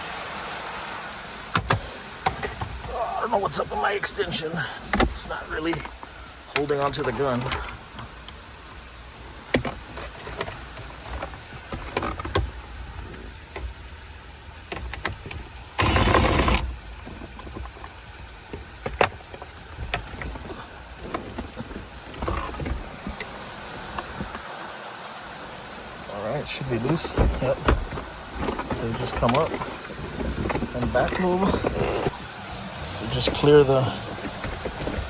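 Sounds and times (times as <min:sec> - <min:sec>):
cordless impact gun whine: 0:15.8 - 0:16.6.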